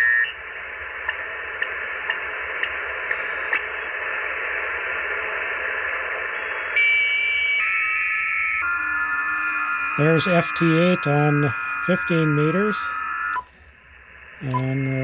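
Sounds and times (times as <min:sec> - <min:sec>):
radio receiver hiss: 0:00.0 - 0:06.8, 0:10.0 - 0:15.0
steady digital signal tones: 0:06.8 - 0:15.0.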